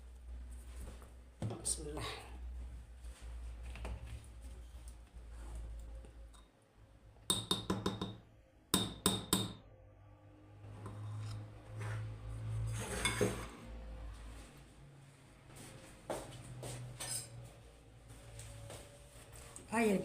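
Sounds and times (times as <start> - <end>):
handling and scraping: 10.8 - 13.6.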